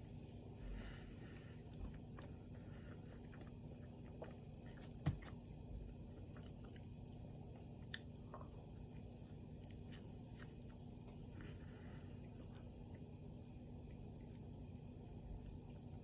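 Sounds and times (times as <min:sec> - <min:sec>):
person chewing: 0:01.6 - 0:05.3, 0:05.9 - 0:14.4.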